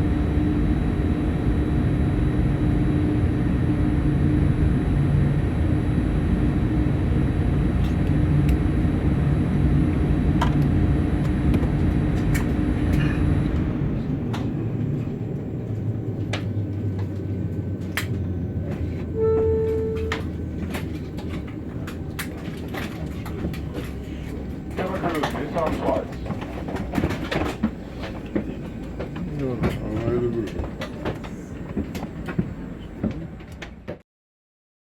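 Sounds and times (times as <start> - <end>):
aircraft cabin hum: 0.0 - 34.0
short held tone: 19.1 - 20.3.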